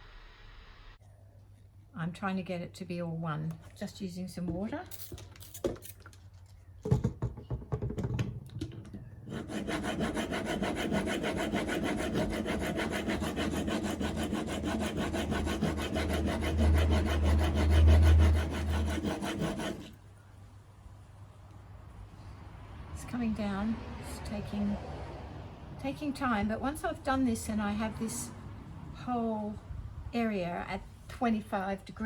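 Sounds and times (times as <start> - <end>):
chisel scraping on sharpening stone: 9.3 - 20.0.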